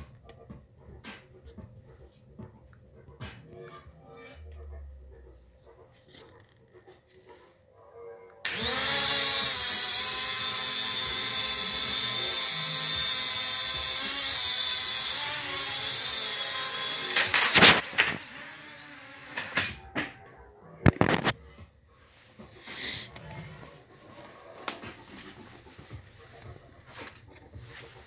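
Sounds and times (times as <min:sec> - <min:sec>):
drone motors whining: 0:08.5 - 0:19.8.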